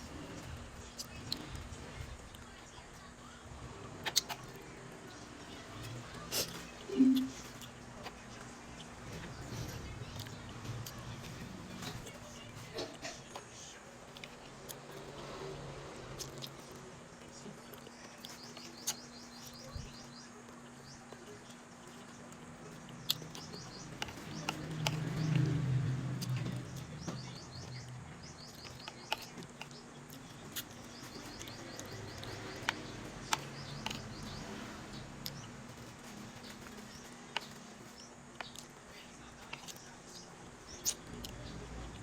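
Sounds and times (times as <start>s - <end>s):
sharp clicks from eating: 16.2s - 38.8s.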